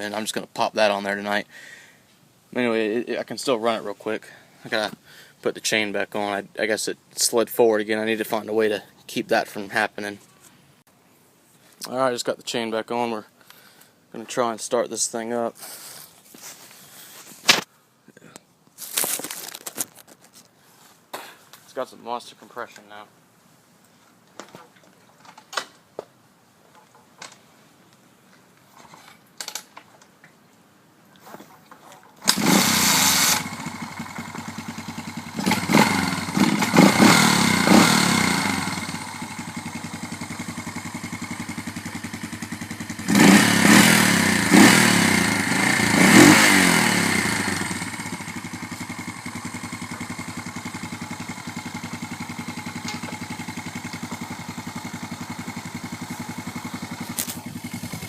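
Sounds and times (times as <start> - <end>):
motorcycle engine starting and idling: 32.2 - 58.0
engine revving: 32.3 - 58.0.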